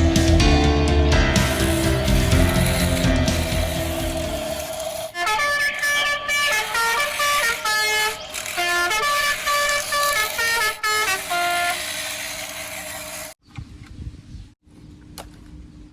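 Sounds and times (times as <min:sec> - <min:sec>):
melody of short notes: 0:00.0 - 0:04.8.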